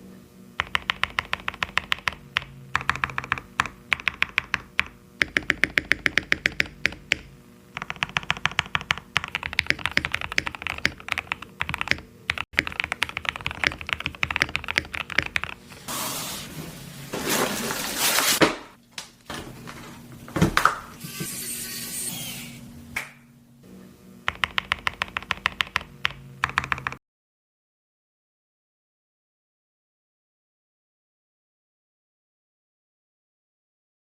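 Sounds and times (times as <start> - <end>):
mechanical keyboard typing: 0.6 - 15.6, 24.3 - 27.0.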